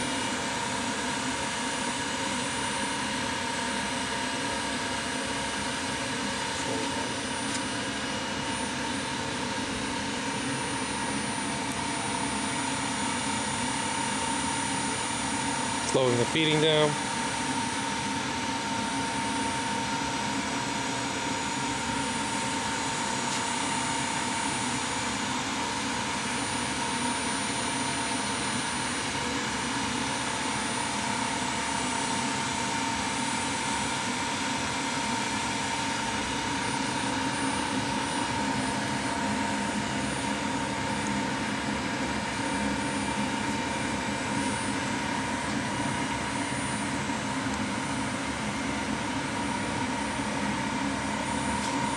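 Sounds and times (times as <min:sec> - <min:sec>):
high whine: 0:00.0 - 0:51.9
grinder mechanical drone: 0:05.5 - 0:18.4.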